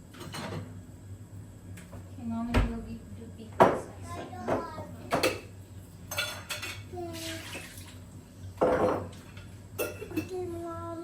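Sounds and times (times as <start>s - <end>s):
dishes and cutlery clinking: 4.5s - 5.5s, 6.1s - 7.9s, 8.6s - 10.5s.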